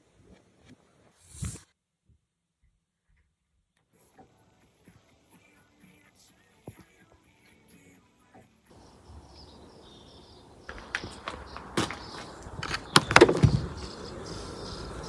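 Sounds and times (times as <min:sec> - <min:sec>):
sharp clicks and knocks: 0:10.7 - 0:14.0.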